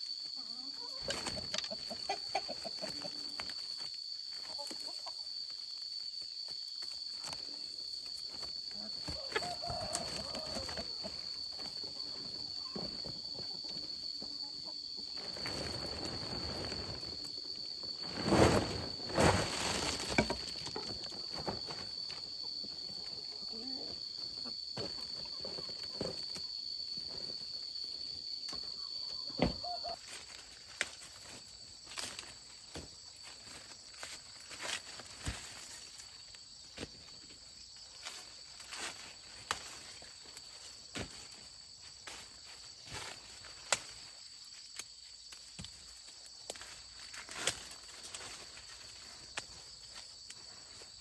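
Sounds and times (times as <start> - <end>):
rustling and crackling: 15.1 - 22.2.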